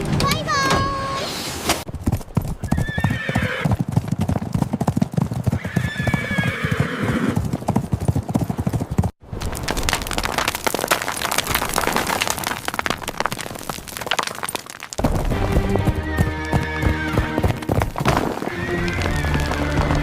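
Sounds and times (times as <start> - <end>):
horse hooves clip-clopping: 1.9 - 20.0
horse whinnying: 2.7 - 3.8, 5.5 - 7.4, 16.0 - 17.5.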